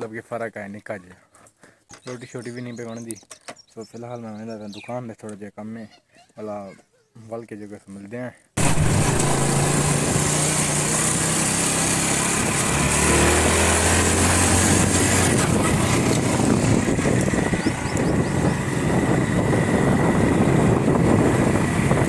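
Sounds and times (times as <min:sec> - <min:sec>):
road and wind noise hiss: 0:08.6 - 0:22.0
vehicle engine running: 0:08.6 - 0:22.0.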